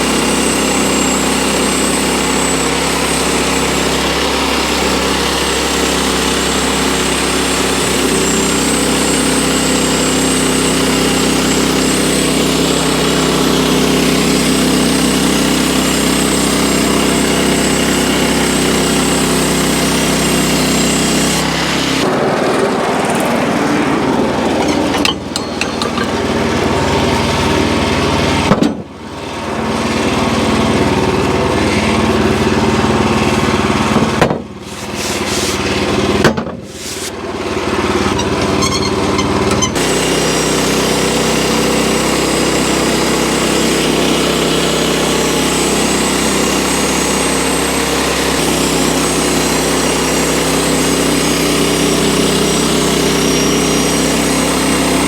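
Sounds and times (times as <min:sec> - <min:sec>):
band sawmill running: 0:00.0 - 0:55.0.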